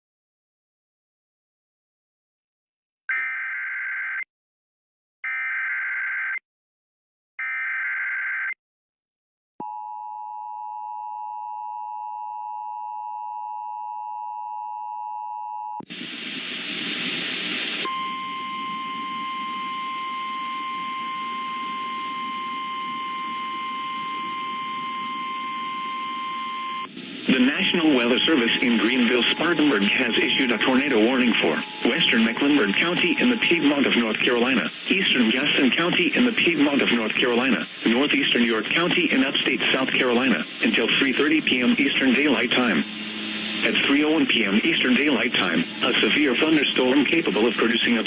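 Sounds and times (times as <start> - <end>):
noisy weather radio audio: 15.8 - 48.0
static: 15.8 - 48.0
two-tone attention signal: 17.8 - 34.6
steady alarm tone: 17.8 - 38.2, 40.0 - 48.0
screeching data bursts: 17.8 - 48.0.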